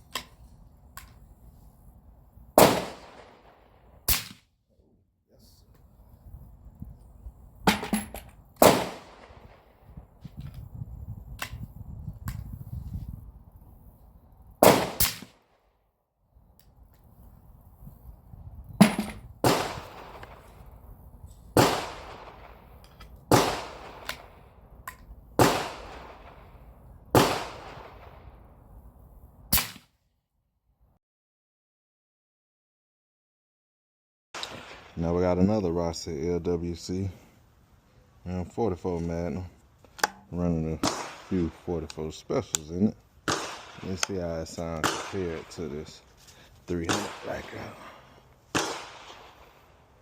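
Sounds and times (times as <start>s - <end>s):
suppressed rifle shots: 2.6s - 4.5s, 7.6s - 9.8s, 14.6s - 15.4s, 18.8s - 20.6s, 21.6s - 24.4s, 25.4s - 26.5s, 27.2s - 28.2s, 29.5s - 29.9s, 34.4s - 35.0s, 40.8s - 41.6s, 43.2s - 44.2s, 44.8s - 45.5s, 46.8s - 49.6s.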